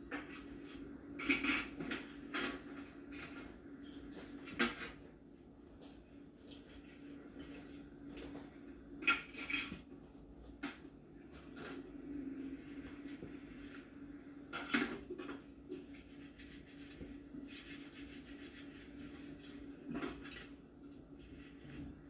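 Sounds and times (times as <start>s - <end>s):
dishes clinking: 3.8s - 4.8s, 9.0s - 9.8s
steady low hum: 9.8s - 22.0s.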